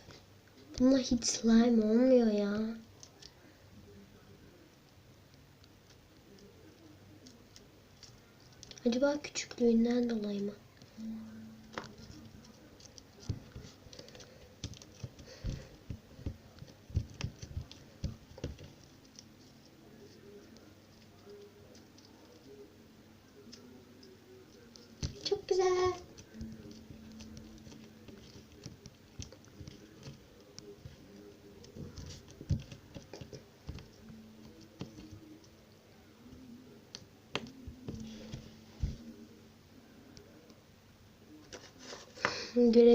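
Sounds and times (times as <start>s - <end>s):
hands squishing slime: 11.7s - 22.5s.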